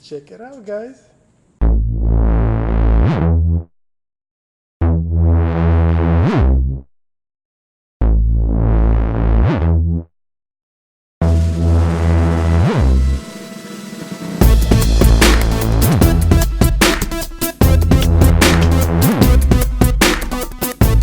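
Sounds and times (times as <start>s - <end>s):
electronic music with synth bass: 1.6s - 3.7s, 4.8s - 6.8s, 8.0s - 10.0s, 11.2s - 21.0s
swooping pitch sweep: 11.2s - 19.6s.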